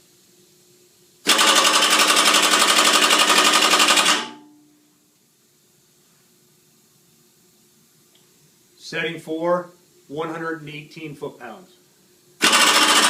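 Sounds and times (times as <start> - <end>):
pneumatic impact wrench hammering: 1.2 - 4.4, 12.4 - 13.0.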